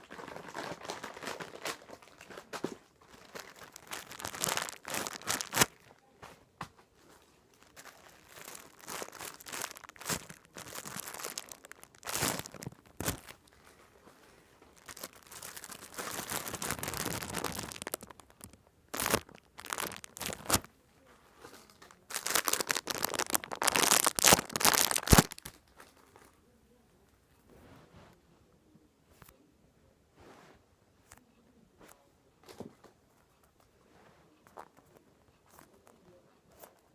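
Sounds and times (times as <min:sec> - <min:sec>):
plastic packaging crinkling: 0:00.0 - 0:06.0, 0:07.2 - 0:13.8, 0:14.6 - 0:20.7, 0:21.5 - 0:26.3.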